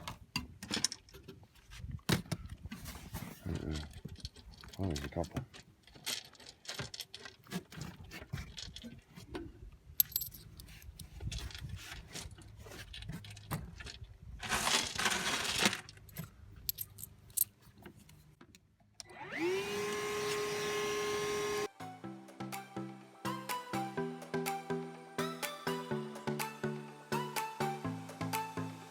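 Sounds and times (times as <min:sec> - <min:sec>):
rattling pour of coins: 0:14.4 - 0:17.1
steady whine rising in pitch: 0:19.0 - 0:28.9.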